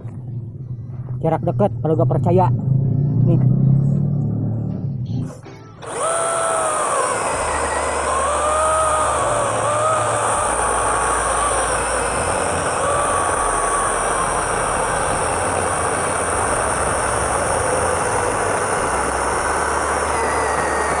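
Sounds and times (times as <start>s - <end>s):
electric chainsaw cutting wood: 5.8s - 21.0s.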